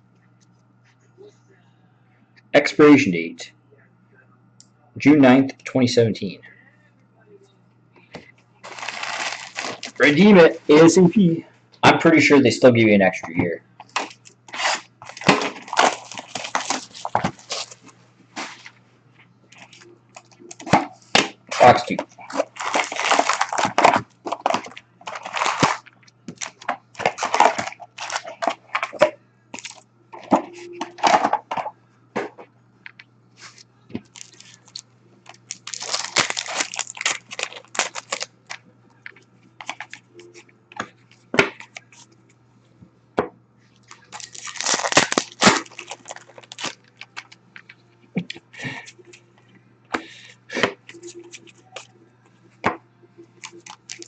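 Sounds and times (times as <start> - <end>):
foil wrappers crinkling and tearing: 8.6 - 10.8, 13.8 - 18.7, 19.6 - 30.4, 33.4 - 38.6, 39.6 - 40.0, 43.8 - 47.7, 53.4 - 54.0.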